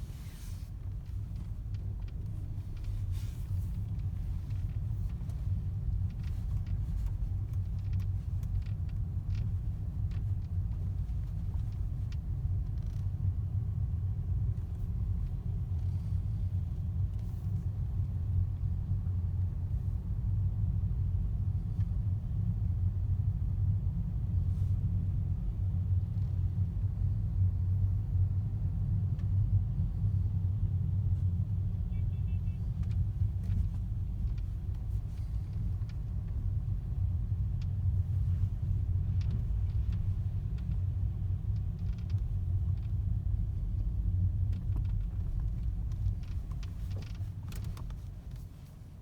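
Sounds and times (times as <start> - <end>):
low road rumble: 0.0 - 49.0
interior trim creaks and clicks: 0.7 - 13.2, 32.2 - 48.9.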